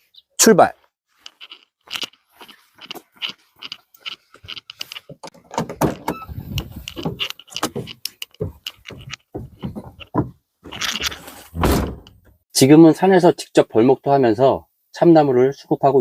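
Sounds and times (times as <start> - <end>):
clicks and knocks: 4.5 - 12.4
heavy thumps: 5.2 - 12.4.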